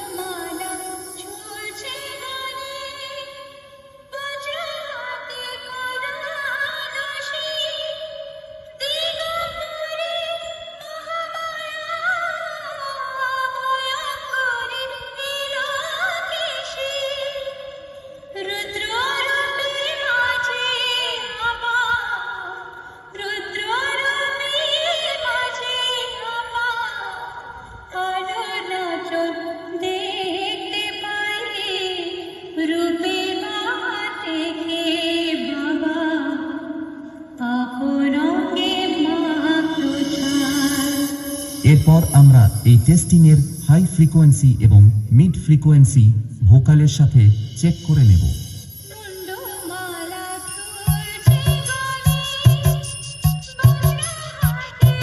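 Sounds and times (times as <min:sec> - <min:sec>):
woman singing: 0:00.0 - 0:41.7, 0:48.8 - 0:55.0
music: 0:38.6 - 0:45.1, 0:47.0 - 0:55.0.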